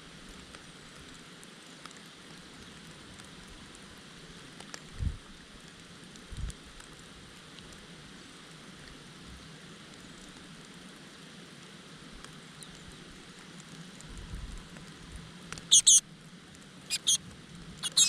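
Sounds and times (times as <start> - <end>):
bird chicks begging calls: 15.7 - 16.0, 16.9 - 17.2.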